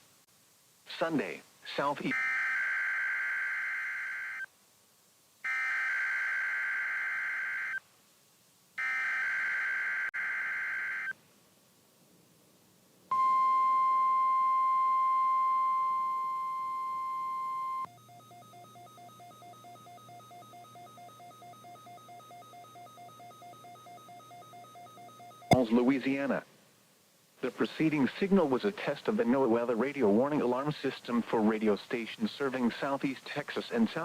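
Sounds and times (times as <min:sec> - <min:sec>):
steady warning alarm tone: 0:08.8 - 0:11.1, 0:17.2 - 0:25.6.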